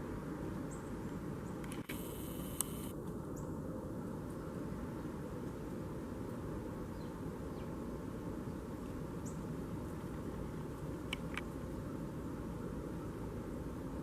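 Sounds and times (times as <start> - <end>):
low outdoor rumble: 0.0 - 14.0
sharp clicks: 1.6 - 2.9.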